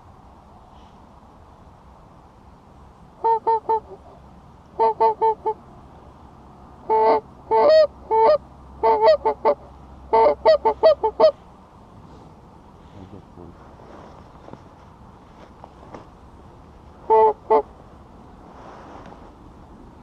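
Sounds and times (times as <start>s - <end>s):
goose honking: 4.8s - 5.6s, 6.8s - 11.4s, 17.1s - 17.7s.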